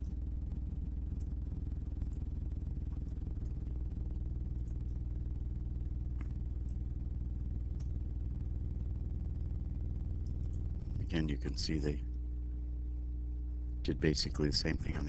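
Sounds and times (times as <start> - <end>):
low electrical hum: 0.0 - 15.0
faint clicks: 1.1 - 1.4, 2.0 - 5.1, 7.6 - 8.2.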